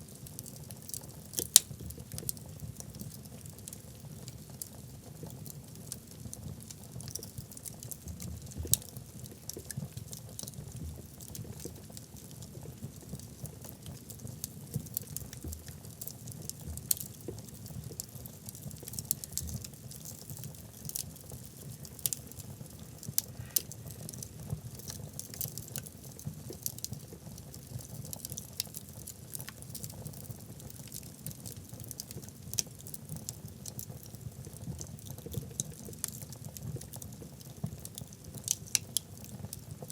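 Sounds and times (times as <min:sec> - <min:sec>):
low rumble of flame: 0:00.0 - 0:39.9
wood fire crackling: 0:00.0 - 0:39.9.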